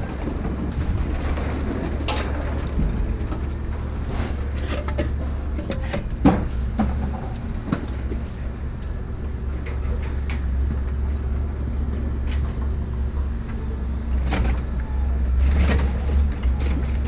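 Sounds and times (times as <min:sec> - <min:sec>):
engine idling rumble: 0:00.0 - 0:17.0
sharp knocks and clanks: 0:04.6 - 0:08.2.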